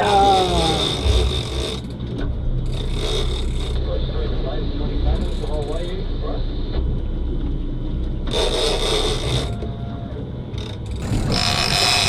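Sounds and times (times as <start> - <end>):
fishing reel clicker buzzing: 10.6 - 12.0.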